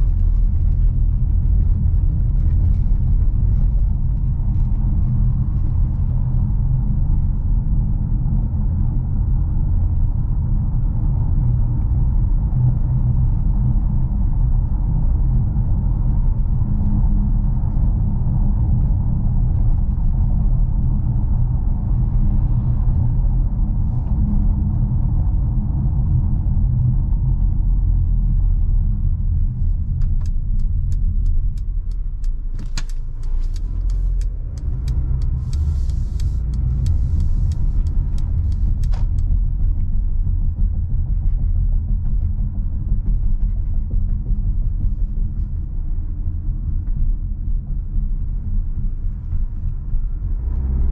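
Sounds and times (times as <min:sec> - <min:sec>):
car engine rumble: 0:00.0 - 0:50.9
road noise: 0:00.0 - 0:50.9
sharp clicks: 0:30.0 - 0:39.4.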